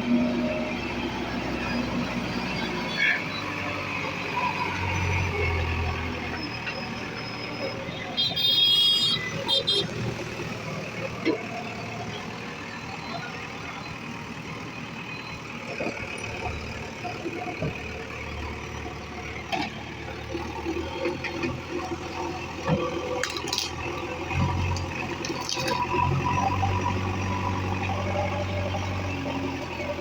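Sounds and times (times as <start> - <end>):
diesel machinery running: 0.0 - 30.0.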